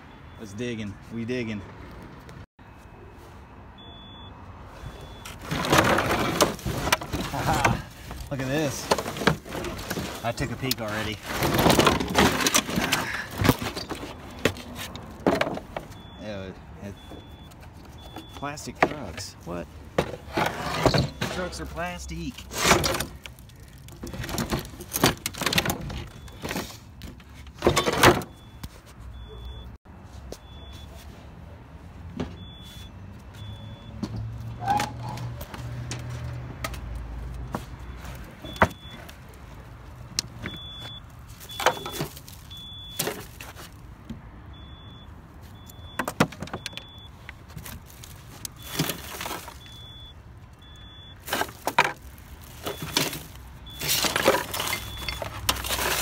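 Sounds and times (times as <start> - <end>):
scrap junk knocking and clanking: 5.3 - 16.1, 17.5 - 28.4, 40.4 - 43.8, 51.2 - 56.0
faint high-pitched beeping: 48.6 - 51.2.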